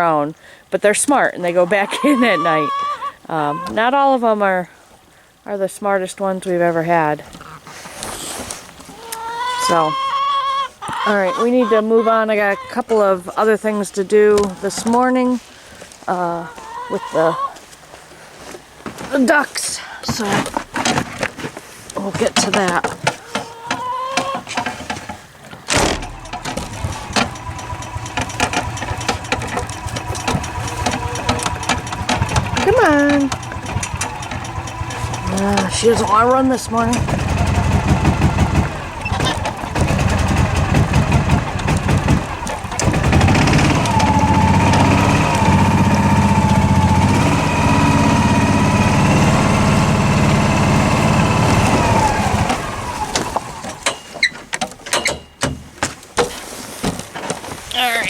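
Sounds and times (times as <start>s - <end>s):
sharp knocks and clicks: 22.2s - 36.0s, 36.6s - 45.5s
engine cranking and running unevenly: 25.8s - 53.9s
rapid irregular engine ticking: 25.9s - 53.8s.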